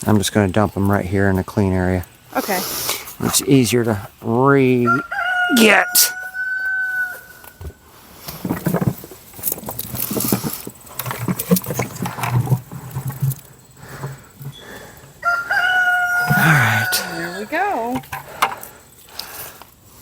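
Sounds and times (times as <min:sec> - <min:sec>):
rooster crowing: 0:04.8 - 0:07.6, 0:15.2 - 0:17.9.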